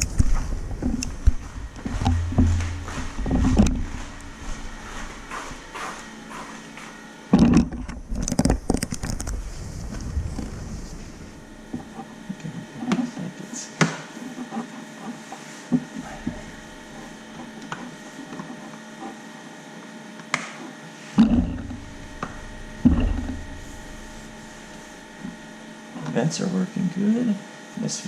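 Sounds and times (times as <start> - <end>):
faint steady hum: 0.0 - 28.0
loud thuds: 0.1 - 6.2, 21.2 - 25.6.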